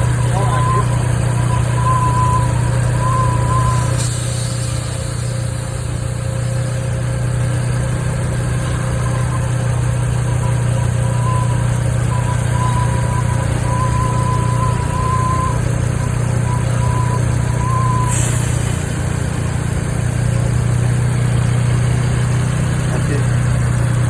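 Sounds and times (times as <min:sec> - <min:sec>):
high-pitched valve whine: 0:00.0 - 0:06.3, 0:08.3 - 0:19.0
car engine idling: 0:00.0 - 0:24.0.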